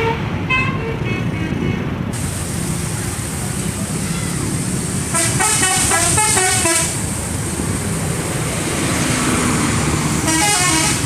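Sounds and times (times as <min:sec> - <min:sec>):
multi-tone bus air horn melody: 0:00.0 - 0:01.6, 0:05.1 - 0:07.0, 0:10.2 - 0:11.0.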